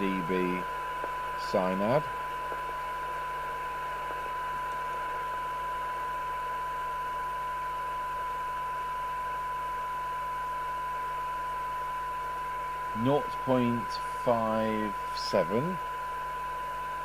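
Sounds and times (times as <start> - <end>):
radio hiss: 0.0 - 6.4, 10.7 - 17.0
steady test tone: 0.0 - 17.0.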